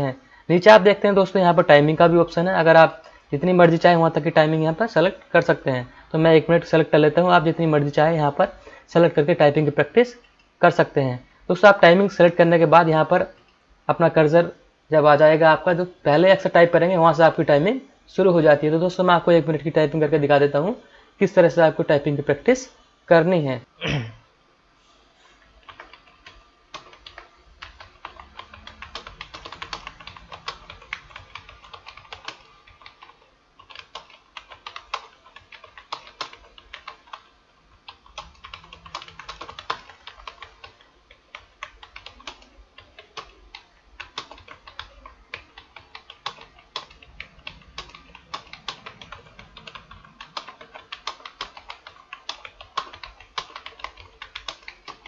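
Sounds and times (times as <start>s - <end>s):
typing on computer keyboard: 25.6s - 55.0s.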